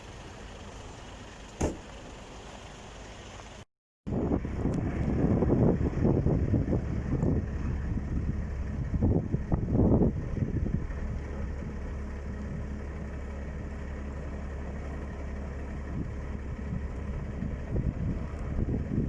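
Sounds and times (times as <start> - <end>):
vehicle engine rumbling: 0.0 - 19.0
wind buffeting microphone: 4.1 - 19.0.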